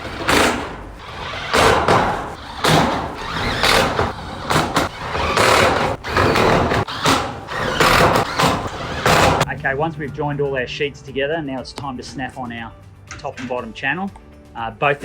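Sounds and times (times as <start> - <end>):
sheet metal rattling: 0.0 - 9.5.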